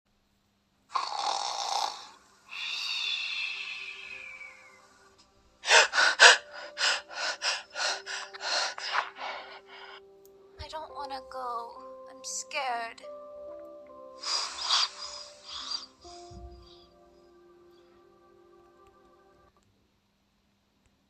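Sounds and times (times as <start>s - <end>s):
person breathing noisily: 1.4s - 10.1s, 14.1s - 17.2s.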